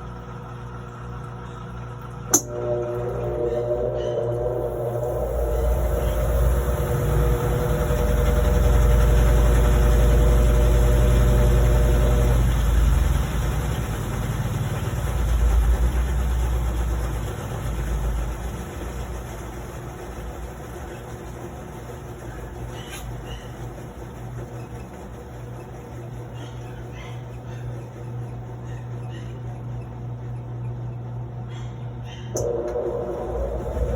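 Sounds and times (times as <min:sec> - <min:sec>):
motor whine: 0:00.0 - 0:19.3, 0:32.0 - 0:33.9
washing machine hum: 0:00.0 - 0:33.9.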